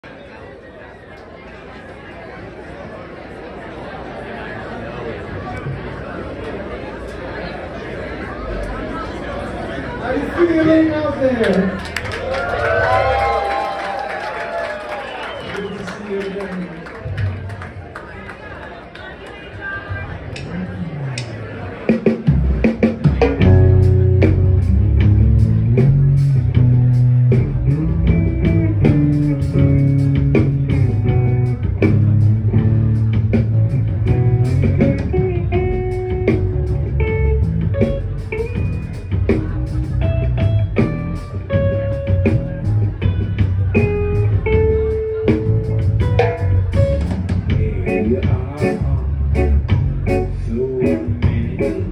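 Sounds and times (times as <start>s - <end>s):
drum kit steady beat: 21.9s - 51.9s
bass guitar: 22.0s - 51.9s
electric guitar lines: 23.4s - 51.9s.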